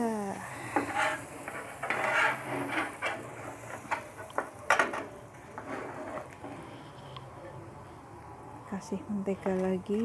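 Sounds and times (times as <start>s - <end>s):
spatula scraping frying pan: 0.6s - 4.1s.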